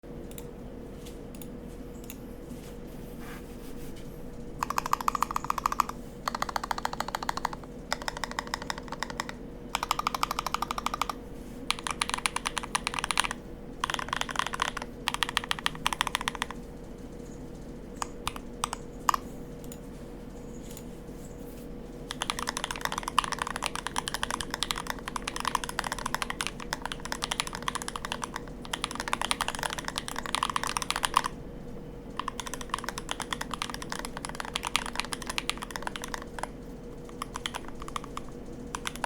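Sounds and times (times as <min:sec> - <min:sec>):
faint steady hum: 0:00.0 - 0:39.0
mechanical keyboard typing: 0:04.6 - 0:17.3, 0:18.0 - 0:19.8, 0:22.1 - 0:31.4, 0:32.1 - 0:39.0.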